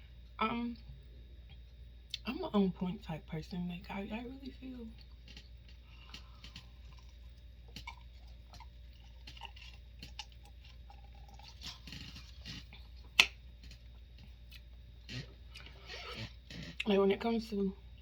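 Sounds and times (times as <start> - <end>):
mouth chewing sounds: 5.0 - 14.8.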